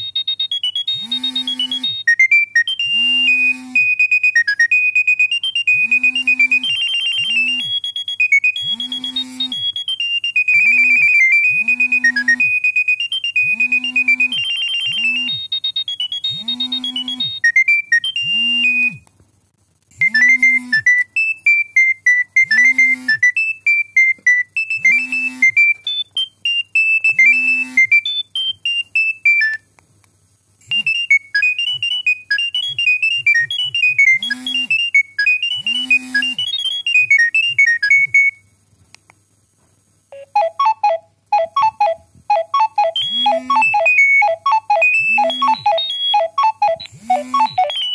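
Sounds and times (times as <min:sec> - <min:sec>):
synthesized ringtone melody: 0:40.1 - 0:47.9.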